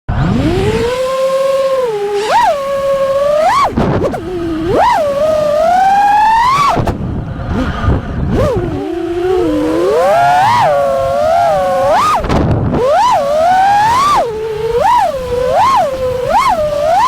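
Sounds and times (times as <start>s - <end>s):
drone motors whining: 0.1s - 17.0s.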